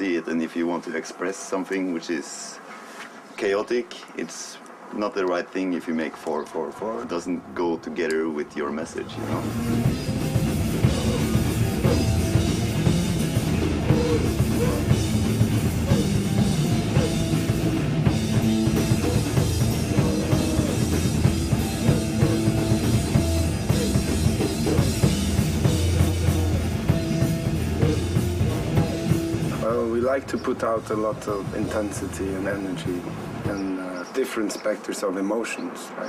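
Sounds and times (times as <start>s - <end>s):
loud rock music: 9.1s - 30.2s
drum kit pounding: 9.2s - 33.6s.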